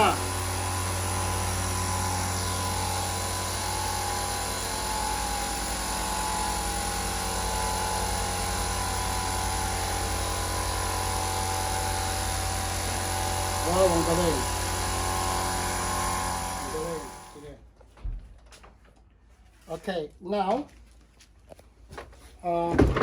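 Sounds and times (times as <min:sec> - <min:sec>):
air compressor running: 0:00.0 - 0:17.4.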